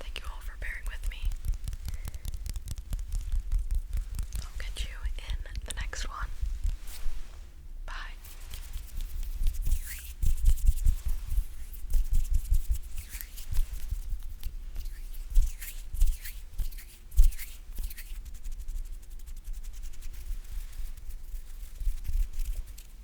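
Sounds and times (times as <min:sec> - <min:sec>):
soft low thumps: 0:00.0 - 0:07.6
sticky taps and peeling crackles: 0:00.2 - 0:06.9.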